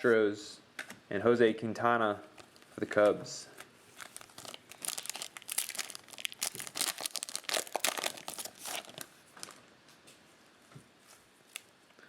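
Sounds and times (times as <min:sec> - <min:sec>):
foil wrapper tearing and crinkling: 0:04.0 - 0:09.6.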